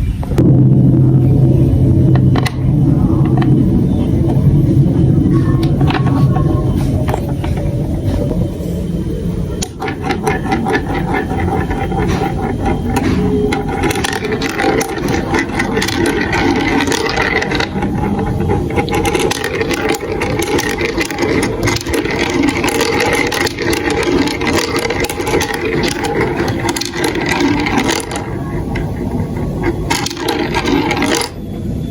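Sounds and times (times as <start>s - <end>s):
marbles rattling through plastic run: 1.7s - 31.4s.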